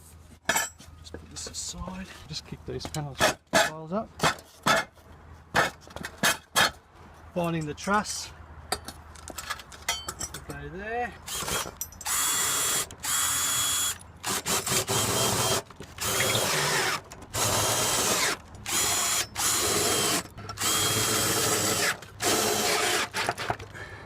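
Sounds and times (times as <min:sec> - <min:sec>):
power drill driving screws: 0:11.3 - 0:23.6.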